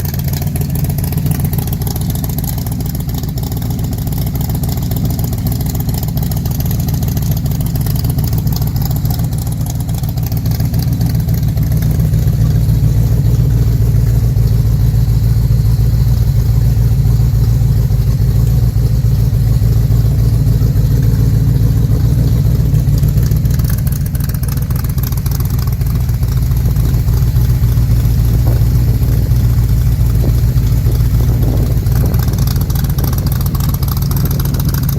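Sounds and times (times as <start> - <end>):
deep engine exhaust note: 0.0 - 34.9.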